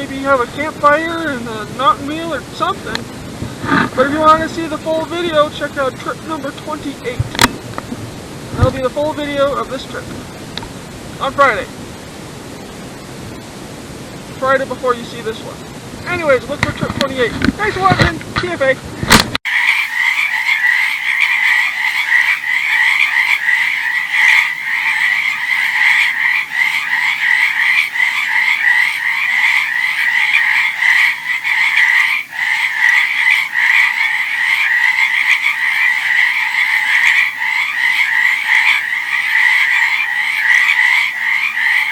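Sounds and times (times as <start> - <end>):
frogs trilling chorus: 19.5 - 41.9.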